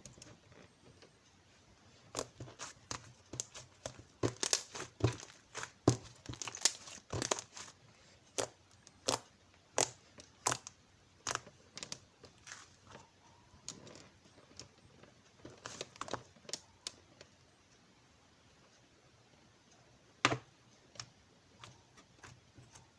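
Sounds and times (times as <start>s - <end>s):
crinkling and tearing: 2.1s - 13.0s.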